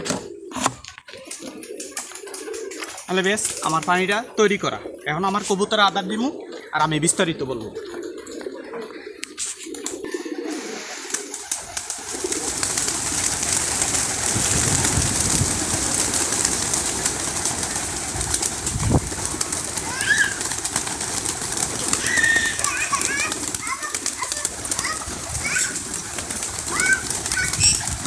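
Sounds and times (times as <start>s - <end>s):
pigeons cooing: 0.0s - 28.0s
steady hiss: 9.6s - 14.6s.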